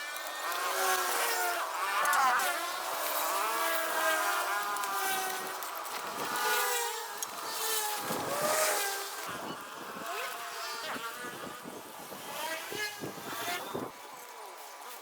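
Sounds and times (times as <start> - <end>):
small petrol engine running: 0.0 - 9.3.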